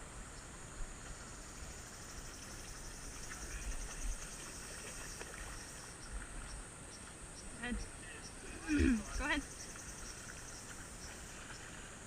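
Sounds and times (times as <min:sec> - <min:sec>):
insect chorus shrilling: 0:01.3 - 0:06.1, 0:07.6 - 0:11.7.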